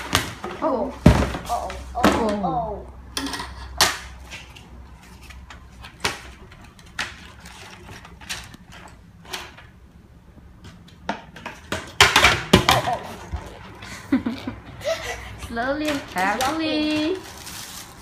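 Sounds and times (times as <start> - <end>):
plastic packaging rustling: 4.2 - 9.7, 15.5 - 18.0.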